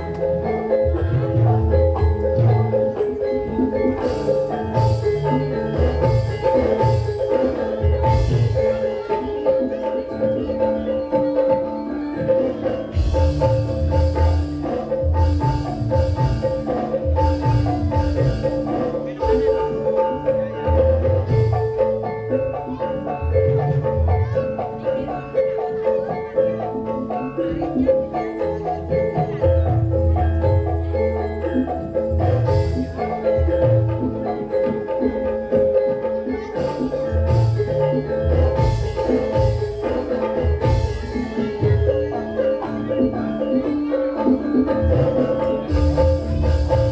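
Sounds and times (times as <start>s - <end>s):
low drum beats: 0.0s - 9.4s, 12.2s - 25.3s, 35.7s - 43.4s, 44.4s - 46.9s
bronze mallet instruments ringing: 0.0s - 46.9s
gamelan music through speakers: 0.0s - 46.9s.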